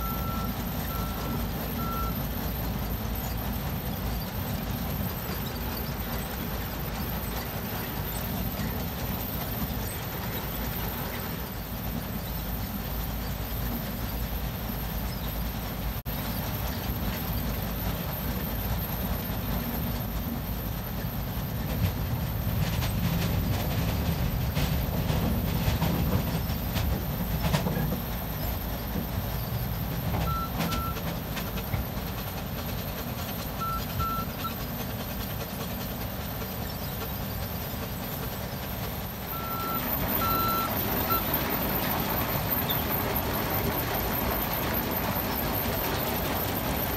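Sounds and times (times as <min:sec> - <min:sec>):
truck reverse alarm beeping: 0:00.0 - 0:03.4, 0:30.1 - 0:31.2, 0:33.5 - 0:34.7, 0:39.2 - 0:46.9
heavy machinery rumbling: 0:35.7 - 0:46.9.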